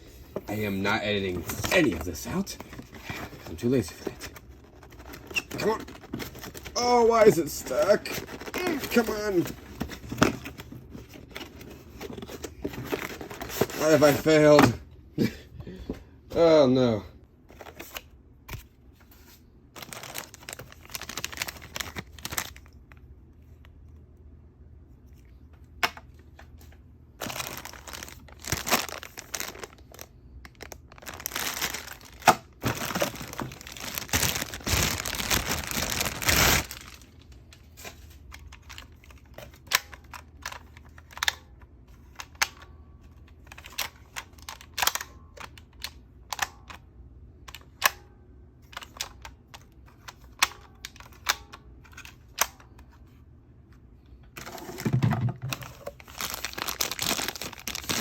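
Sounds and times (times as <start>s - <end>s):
plastic and cardboard crinkling: 0.4s - 14.8s, 17.5s - 22.8s, 27.2s - 41.3s, 54.4s - 58.0s.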